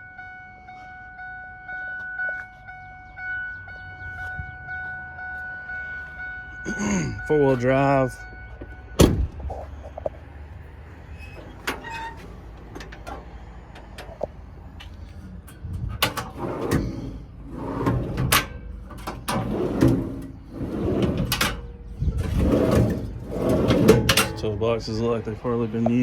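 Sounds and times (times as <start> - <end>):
scraping rattling clunks: 11.1 - 26.0.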